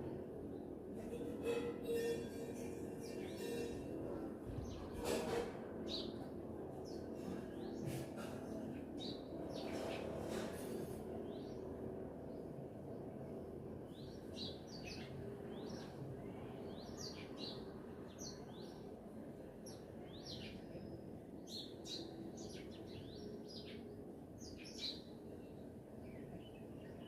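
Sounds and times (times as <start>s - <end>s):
low background hum: 0.0s - 27.0s
songbirds chirping: 5.8s - 27.0s.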